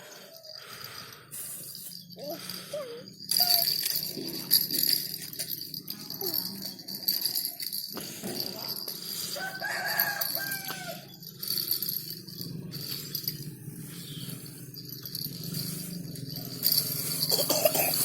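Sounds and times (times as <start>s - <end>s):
rooster crowing: 9.4s - 11.2s.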